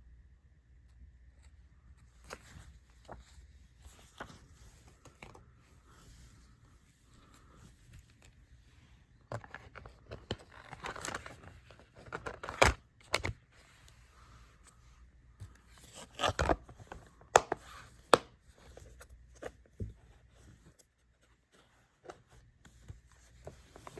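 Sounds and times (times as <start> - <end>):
packaging rustling and scraping: 9.2 - 14.7.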